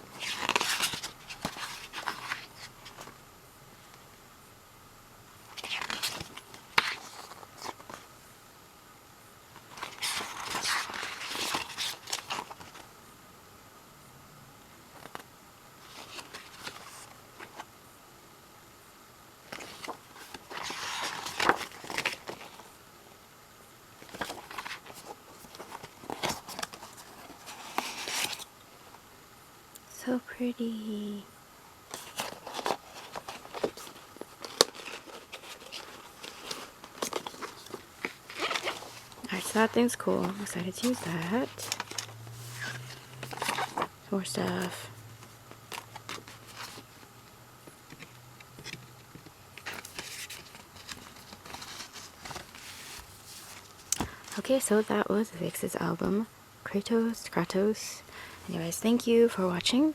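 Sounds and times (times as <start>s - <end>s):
packaging rustling and crinkling: 0.0s - 3.2s, 5.5s - 8.1s, 9.5s - 12.9s, 14.9s - 17.7s, 19.4s - 22.8s, 24.0s - 29.0s, 31.9s - 54.6s.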